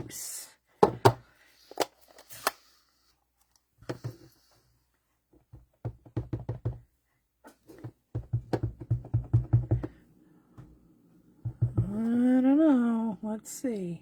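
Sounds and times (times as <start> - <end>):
stamp tapping on ink pad: 8.2 - 10.0.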